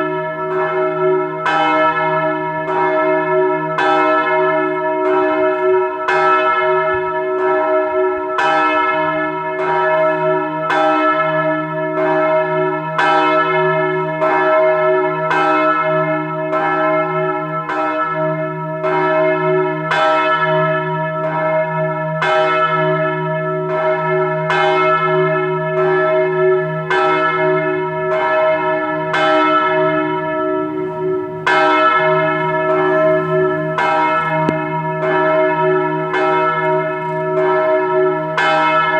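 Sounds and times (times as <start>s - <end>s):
large church bell ringing: 0.0s - 38.9s.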